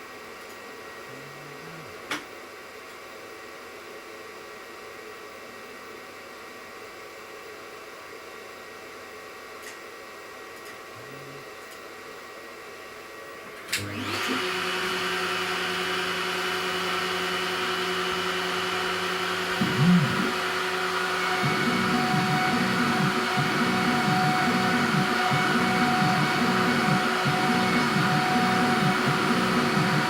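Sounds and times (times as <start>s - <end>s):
router bit cutting wood: 14.0s - 30.0s
router spindle whining: 14.0s - 30.0s.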